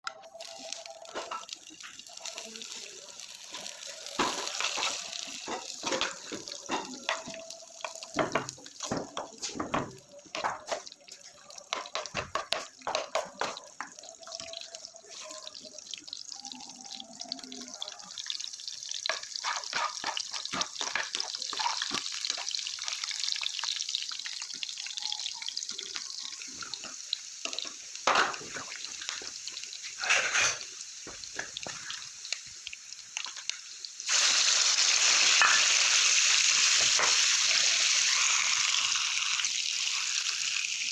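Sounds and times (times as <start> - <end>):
clattering in sink: 30.0 - 30.6.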